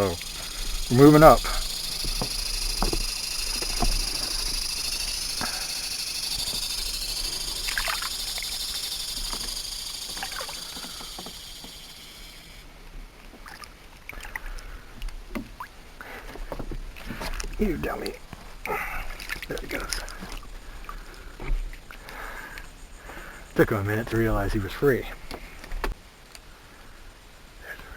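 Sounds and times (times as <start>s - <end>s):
water sloshing around boat: 0.0s - 11.9s, 13.2s - 22.2s
steady high-pitched hiss: 0.0s - 27.9s.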